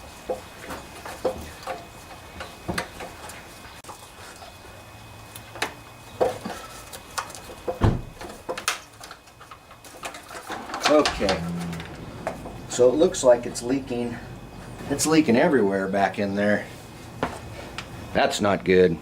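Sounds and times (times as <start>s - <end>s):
heavy thump: 7.8s - 8.2s.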